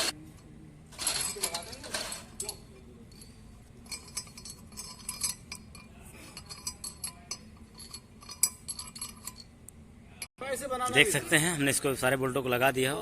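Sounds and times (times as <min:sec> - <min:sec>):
metallic clinks of bolts and spanner: 0:00.9 - 0:09.6.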